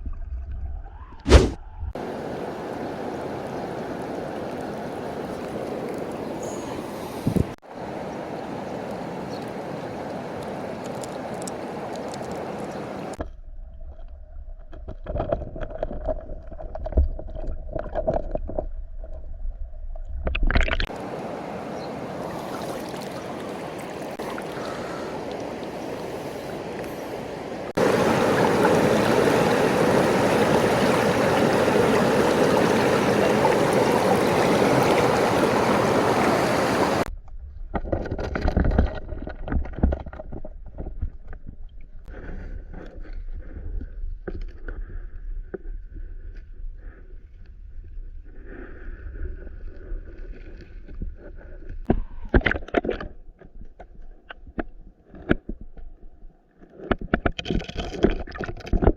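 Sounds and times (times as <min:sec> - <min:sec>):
stream water rushing: 0:02.0 - 0:13.2, 0:20.9 - 0:37.1.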